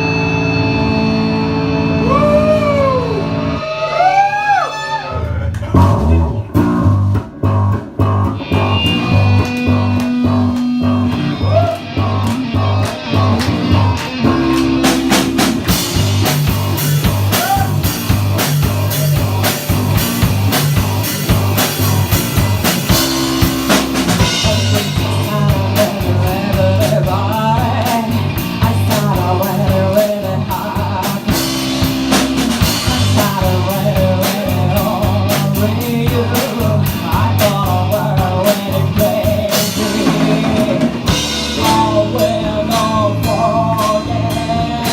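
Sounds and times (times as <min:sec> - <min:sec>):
rock band playing blues-rock: 0:00.0 - 0:04.1, 0:05.7 - 0:44.9.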